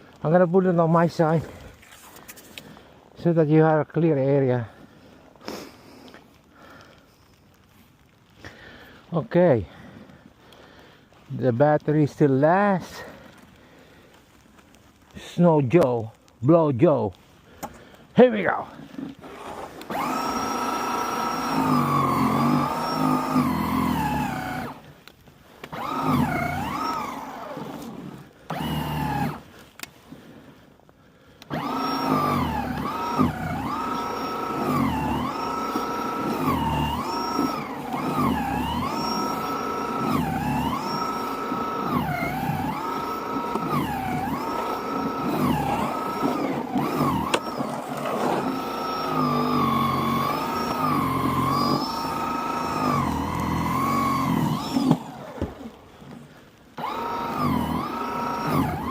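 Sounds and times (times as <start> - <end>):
electric snow blower whine: 4.7 - 7.4, 18.5 - 58.9.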